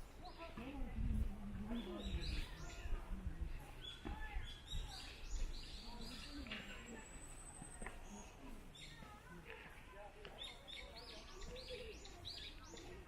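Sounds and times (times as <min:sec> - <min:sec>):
songbirds chirping: 0:00.0 - 0:13.0.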